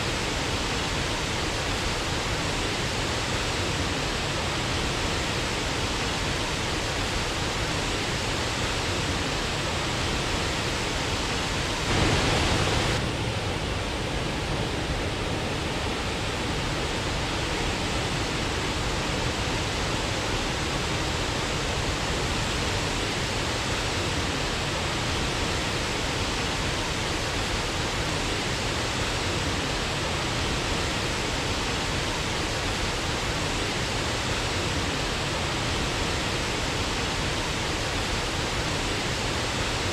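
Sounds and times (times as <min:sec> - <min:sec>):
waterfall rushing: 0:10.2 - 0:39.9.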